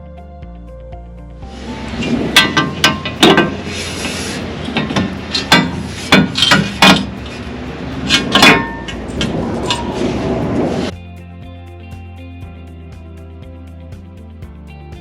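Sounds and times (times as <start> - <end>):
metal rubbing and scraping: 1.5 - 10.9
metal clanks and knocks: 1.7 - 10.6.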